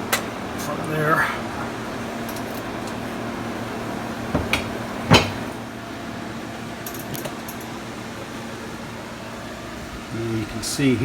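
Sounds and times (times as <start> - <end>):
steady low hum: 0.0 - 11.0
sharp knocks: 4.4 - 5.5.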